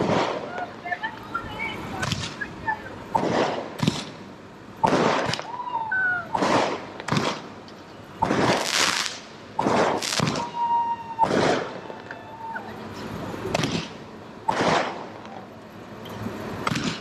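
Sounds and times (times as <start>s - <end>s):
firework whistling: 0.0s - 4.2s, 4.8s - 15.6s
fireworks bangs and crackling: 0.0s - 17.0s.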